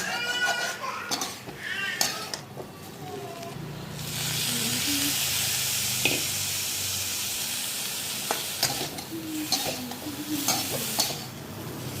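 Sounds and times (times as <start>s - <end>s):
spatula scraping a pan: 0.0s - 2.4s
food sizzling in a pan: 0.0s - 12.0s.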